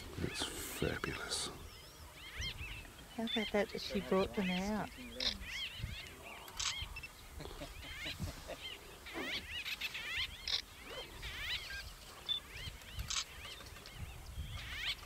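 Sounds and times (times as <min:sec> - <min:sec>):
high chirping animal calls: 0:00.0 - 0:15.0
sharp clicks: 0:06.4 - 0:06.8.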